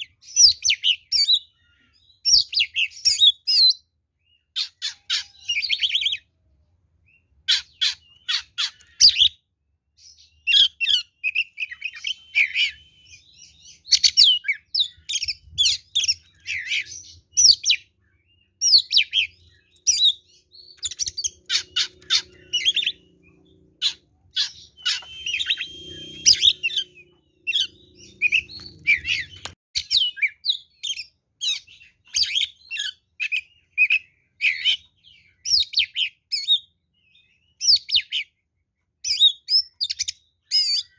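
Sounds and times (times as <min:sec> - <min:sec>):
bird singing sharp chirps: 0:10.3 - 0:17.8, 0:18.6 - 0:29.6.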